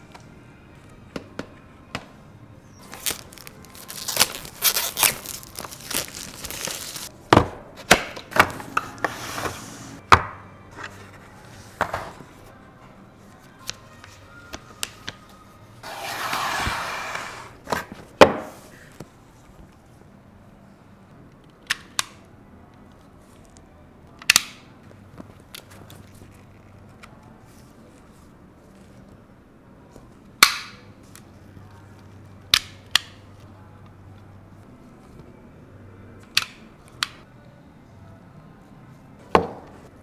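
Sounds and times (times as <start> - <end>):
faint background music: 0.0 - 40.0
packaging crinkling and rustling: 2.8 - 7.1.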